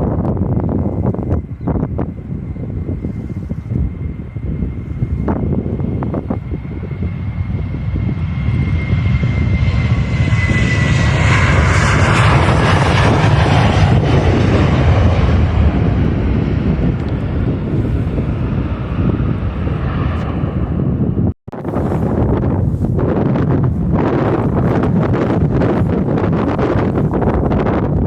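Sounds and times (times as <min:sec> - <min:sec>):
jet engines roaring past: 0:00.0 - 0:28.0.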